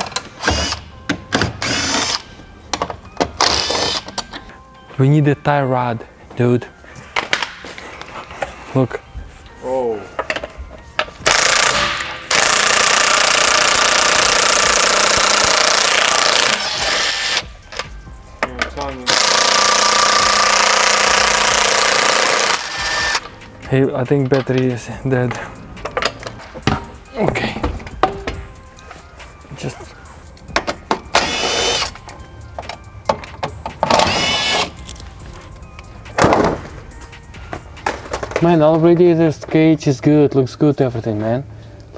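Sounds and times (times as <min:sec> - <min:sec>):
pneumatic impact wrench hammering: 0:00.0 - 0:04.2, 0:11.2 - 0:17.9, 0:19.1 - 0:23.3, 0:30.6 - 0:32.2, 0:33.1 - 0:34.9
power tool whining: 0:11.2 - 0:17.6, 0:19.1 - 0:23.3, 0:31.1 - 0:32.0, 0:33.8 - 0:34.8.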